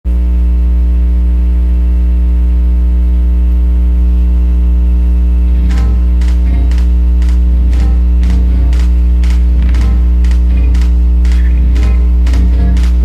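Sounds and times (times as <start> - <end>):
loud steady low hum: 0.1 - 13.0
backing music: 5.5 - 13.0
sharp percussive hits: 5.6 - 13.0.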